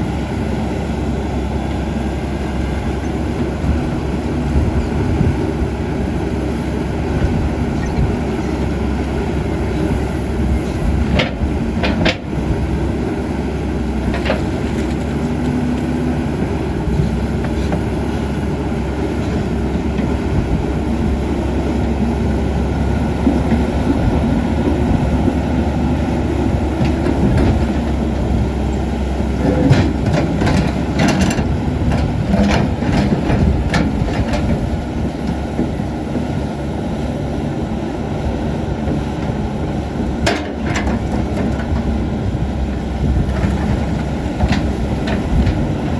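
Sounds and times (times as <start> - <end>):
excavator diesel engine running: 0.0 - 45.9.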